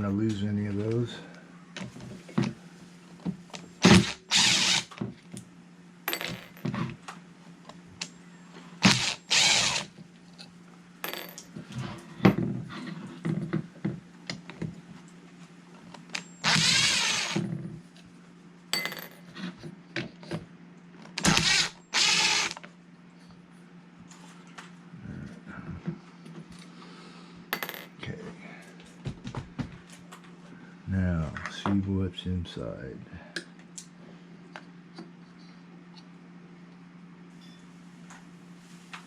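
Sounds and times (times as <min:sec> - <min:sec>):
steady low hum: 0:00.0 - 0:39.0
screws backed out with power tool: 0:03.8 - 0:05.0, 0:08.8 - 0:09.9, 0:16.4 - 0:17.5, 0:21.2 - 0:22.6.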